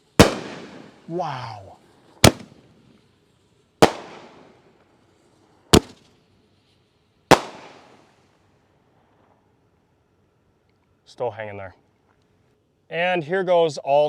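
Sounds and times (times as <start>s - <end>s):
firework shell bangs: 0.2s - 1.1s, 2.2s - 2.6s, 3.8s - 4.6s, 5.8s - 6.0s, 7.3s - 8.0s.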